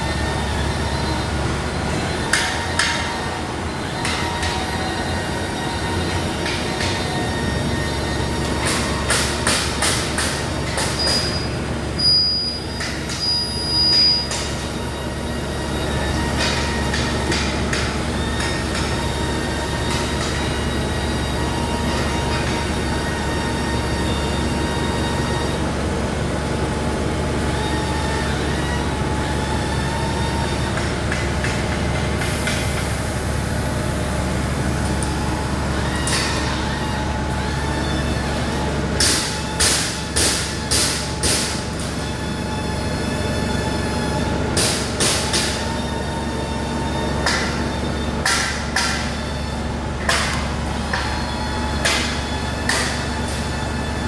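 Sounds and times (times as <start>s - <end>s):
high whining tones: 0.0s - 54.0s
milling machine humming: 0.0s - 54.0s.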